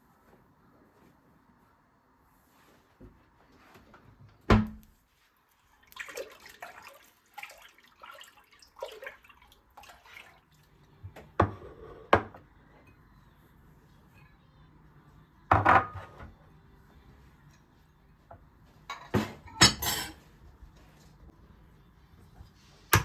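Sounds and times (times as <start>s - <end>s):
water splashing and rinsing: 5.4s - 10.9s.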